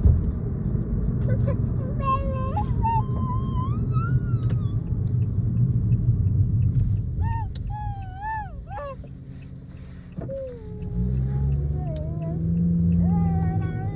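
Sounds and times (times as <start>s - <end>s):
car road rumble: 0.0s - 13.9s
puppy whining: 1.3s - 4.9s, 7.2s - 9.1s.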